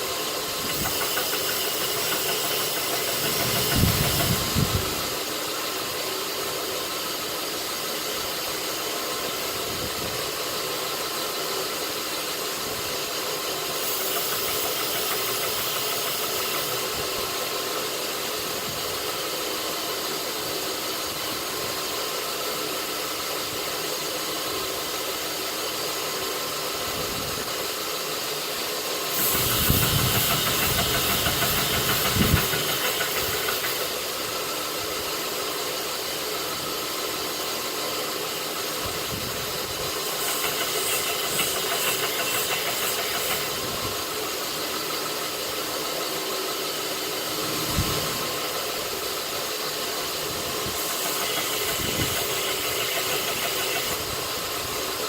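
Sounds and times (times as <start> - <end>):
steel grinding on belt: 0.0 - 5.2, 13.4 - 17.2, 29.1 - 34.0, 39.9 - 43.7, 46.6 - 54.4
belt grinder running: 0.0 - 9.7, 10.3 - 55.0.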